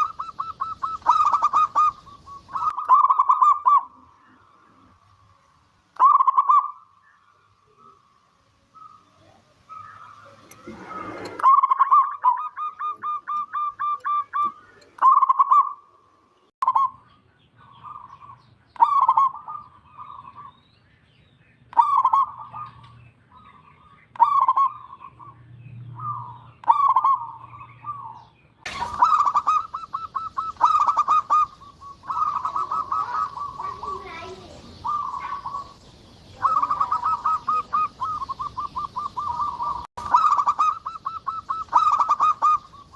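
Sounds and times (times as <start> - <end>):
dove cooing: 0.0 - 5.0, 6.0 - 6.8, 8.8 - 15.8, 21.7 - 23.6, 26.0 - 42.9
noise hiss: 0.0 - 11.5.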